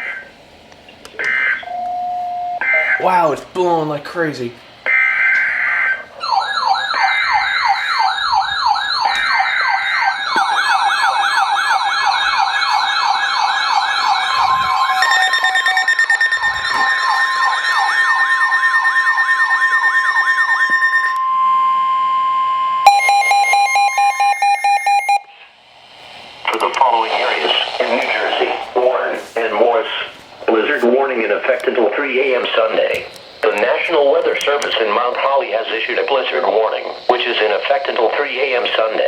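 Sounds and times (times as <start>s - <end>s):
sweeping siren wails: 1.2s - 3.2s, 4.9s - 25.4s
steady alarm tones: 1.2s - 3.6s, 4.8s - 39.0s
fast-pulsing beep: 14.7s - 25.3s.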